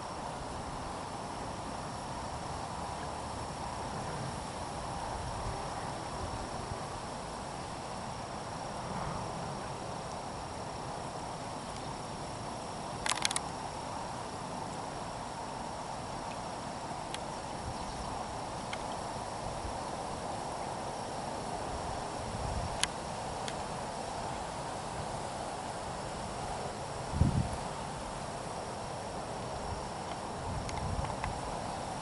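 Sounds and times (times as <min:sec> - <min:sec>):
insects chirring: 0:00.0 - 0:32.0
outdoor noise bed: 0:00.0 - 0:32.0
sharp clicks: 0:13.0 - 0:13.5.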